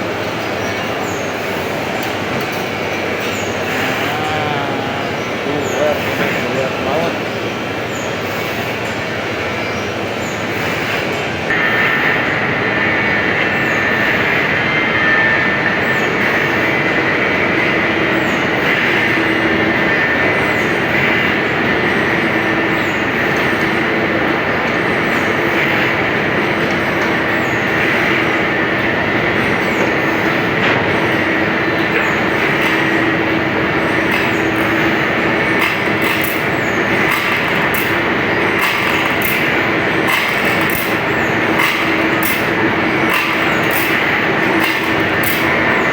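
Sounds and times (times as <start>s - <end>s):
grinder grating with high whine: 3.5s - 7.2s.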